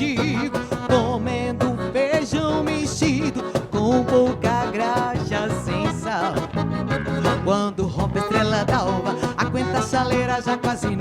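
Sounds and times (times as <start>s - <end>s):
band accompaniment: 0.0s - 11.0s
wavering lead melody: 2.5s - 10.0s.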